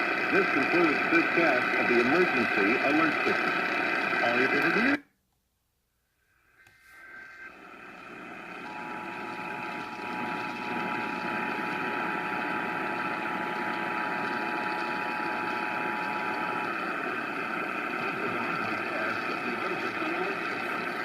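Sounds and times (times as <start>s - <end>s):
radio static hiss: 0.0s - 5.0s, 6.3s - 21.0s.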